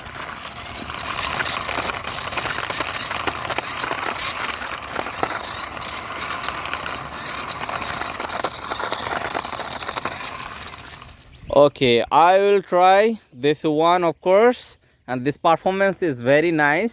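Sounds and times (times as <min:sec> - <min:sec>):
toy wheels rattling and scraping: 0:00.0 - 0:11.4.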